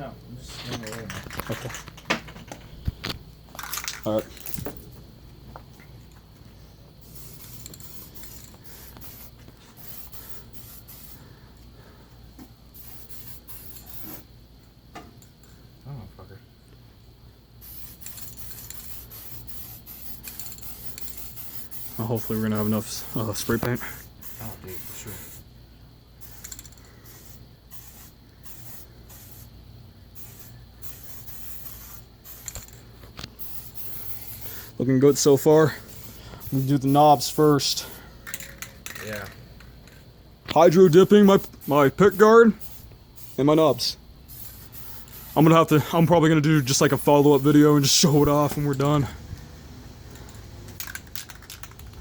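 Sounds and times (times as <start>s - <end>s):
spray can hissing bursts: 7.0s - 11.3s, 12.7s - 14.3s, 17.6s - 25.5s, 26.2s - 38.0s, 40.6s - 49.0s.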